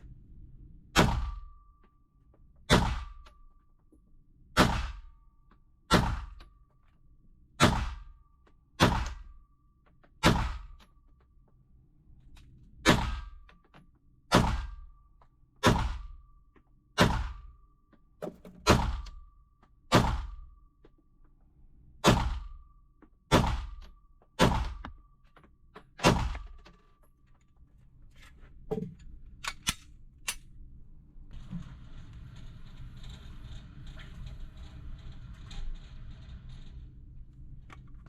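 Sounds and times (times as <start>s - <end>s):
gunshots: 1.0s - 1.5s, 2.7s - 3.2s, 4.6s - 5.1s, 5.9s - 6.4s, 7.6s - 8.1s, 8.8s - 9.3s, 10.2s - 10.8s, 12.8s - 13.4s, 14.3s - 14.8s, 15.6s - 16.2s, 17.0s - 17.5s, 18.2s - 19.2s, 19.9s - 20.5s, 22.0s - 22.6s, 23.3s - 23.8s, 24.4s - 24.8s, 26.0s - 26.6s.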